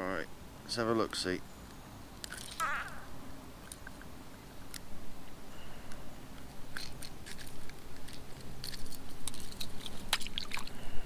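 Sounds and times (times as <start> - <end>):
crackling handling clicks: 1.0 - 2.6, 3.6 - 4.9, 5.9 - 10.2.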